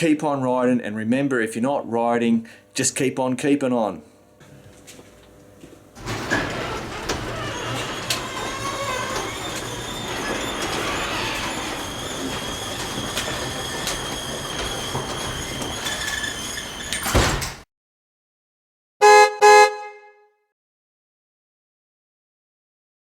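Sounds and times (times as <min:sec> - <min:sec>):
horn toots: 0:19.0 - 0:20.3.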